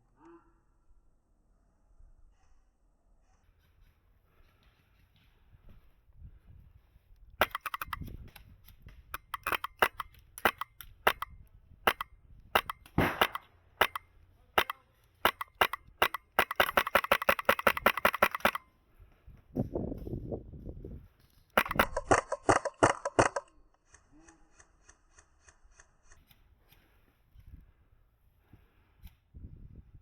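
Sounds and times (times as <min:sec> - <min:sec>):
airsoft rifle firing: 0:07.4 - 0:08.4, 0:09.2 - 0:18.7, 0:21.6 - 0:23.5.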